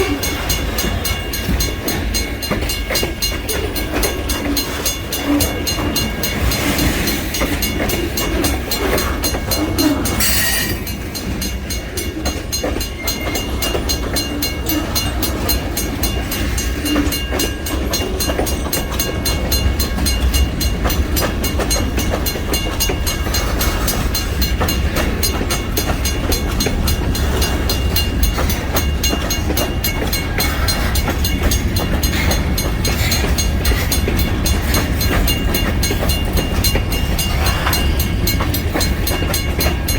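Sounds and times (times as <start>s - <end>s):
freight train rumbling past: 0.0s - 39.9s.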